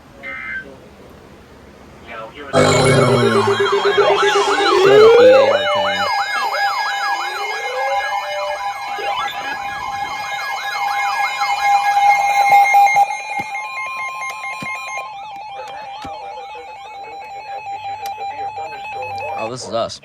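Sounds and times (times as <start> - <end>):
steady beeping tone: 2.6 - 10.4
weather radio siren alarms: 2.6 - 19.5.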